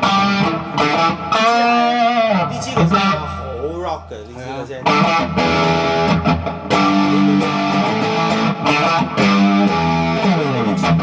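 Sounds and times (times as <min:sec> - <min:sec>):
electric guitar hard-rock riffs: 0:00.0 - 0:03.6, 0:04.8 - 0:11.0.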